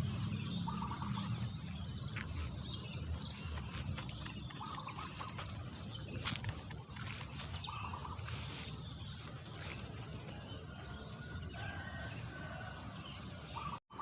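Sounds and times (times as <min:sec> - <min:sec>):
steady low rumble: 0:00.0 - 0:11.0
higher bird chirps: 0:00.0 - 0:12.7.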